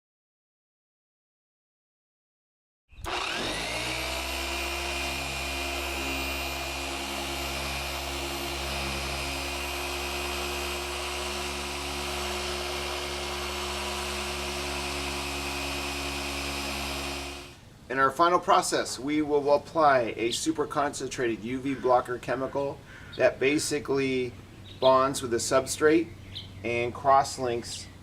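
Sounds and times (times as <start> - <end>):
power tool whining: 3.0 - 17.6.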